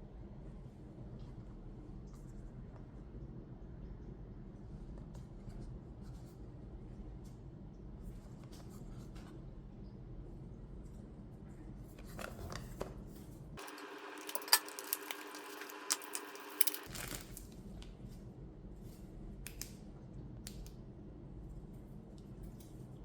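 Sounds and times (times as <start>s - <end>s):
packaging rustling and scraping: 13.6s - 17.5s.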